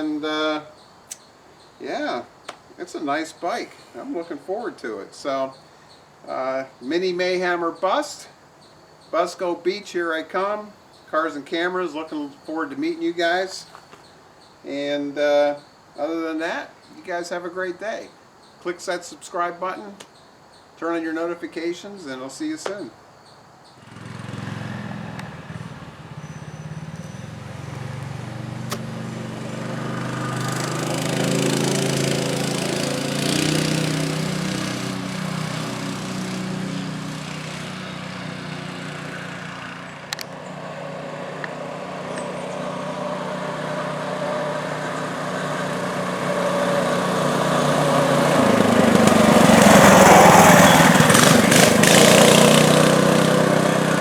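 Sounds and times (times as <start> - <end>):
mini bike engine running: 23.8 - 54.0.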